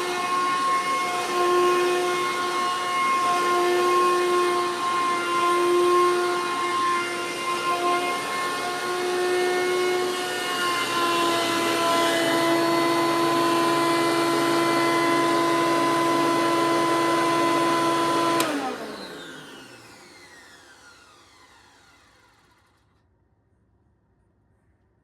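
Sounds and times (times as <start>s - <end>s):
vacuum cleaner motor whining: 0.0s - 22.8s.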